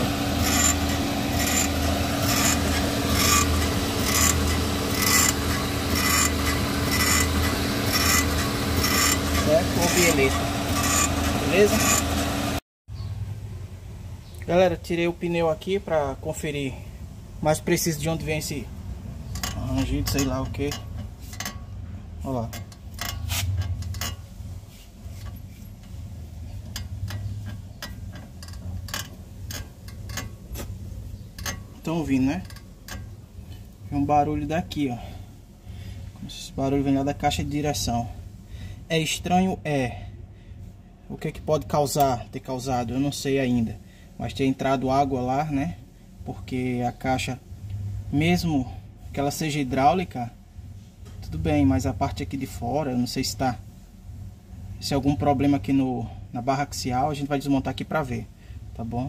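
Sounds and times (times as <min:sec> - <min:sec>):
steering linkage creaking and clicking: 0:00.0 - 0:12.3, 0:19.2 - 0:24.3, 0:25.0 - 0:33.7
engine idling hum: 0:00.0 - 0:14.0
steady low hum: 0:00.0 - 0:59.0.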